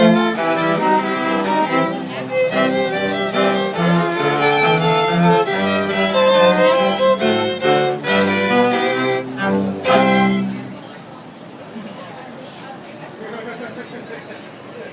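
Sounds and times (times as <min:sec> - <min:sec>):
string quartet playing: 0:00.0 - 0:11.0.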